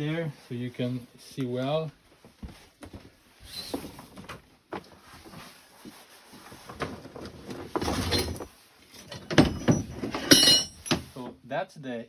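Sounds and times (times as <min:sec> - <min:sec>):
rustling scrapes: 0:05.0 - 0:09.1.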